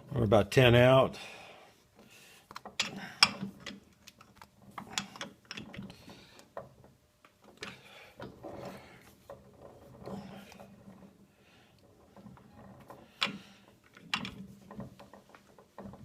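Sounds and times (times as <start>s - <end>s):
lathe chuck clicks and knocks: 2.5s - 8.4s, 12.1s - 16.0s.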